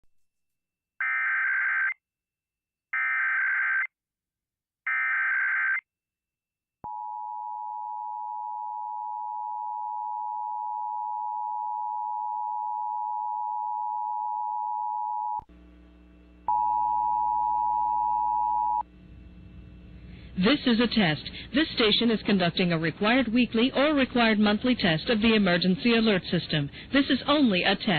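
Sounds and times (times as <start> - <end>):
low hum: 15.5 - 22.1.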